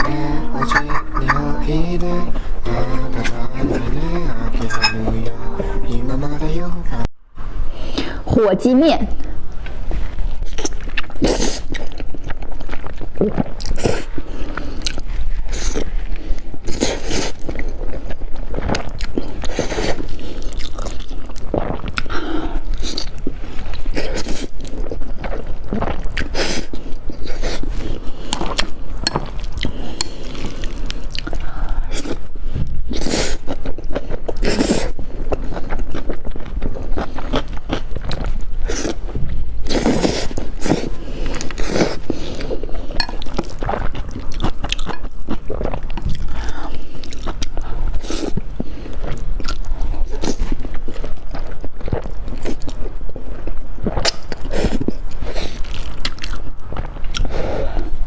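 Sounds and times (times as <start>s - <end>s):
chewing and biting: 32.0s - 58.0s.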